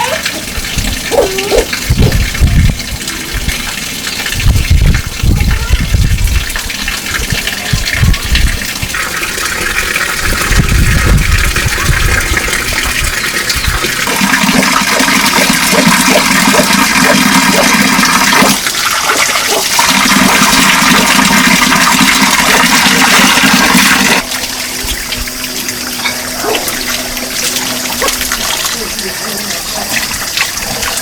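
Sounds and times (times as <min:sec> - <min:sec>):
rushing water: 0:00.0 - 0:31.0
low pulsing sound: 0:24.2 - 0:30.2.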